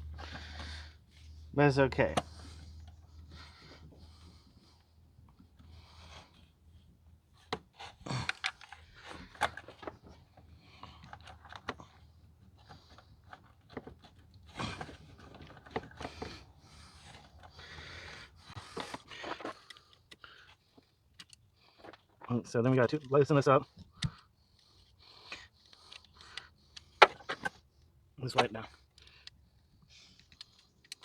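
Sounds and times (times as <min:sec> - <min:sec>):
person breathing heavily: 0:00.1 - 0:01.5, 0:14.5 - 0:19.5.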